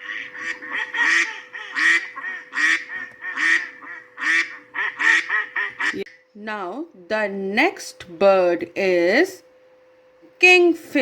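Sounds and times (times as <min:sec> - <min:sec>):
duck quacking: 0:00.0 - 0:06.1.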